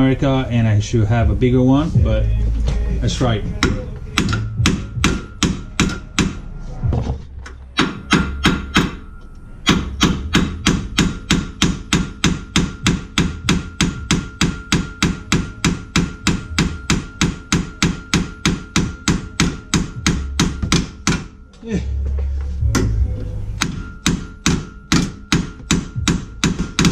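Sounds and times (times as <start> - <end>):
mallet hammering metal bolt: 3.5 - 6.5, 7.4 - 21.4, 23.6 - 26.9.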